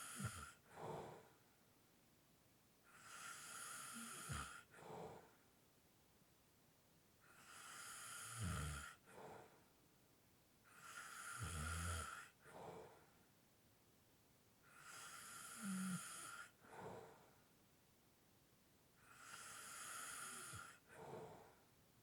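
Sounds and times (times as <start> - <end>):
person snoring lightly: 0.0 - 1.3, 3.0 - 5.3, 14.7 - 17.1, 19.0 - 21.5.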